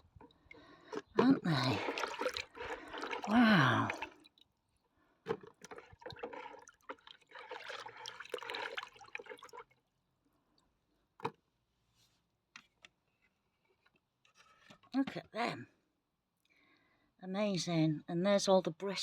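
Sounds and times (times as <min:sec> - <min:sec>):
water splashing and trickling: 0:00.0 - 0:04.6, 0:05.3 - 0:09.9.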